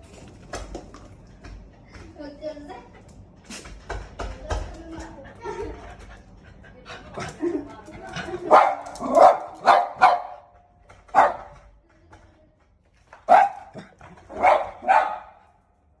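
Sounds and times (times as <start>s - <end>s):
dog barking: 8.4s - 10.5s, 11.1s - 11.6s, 13.3s - 15.6s.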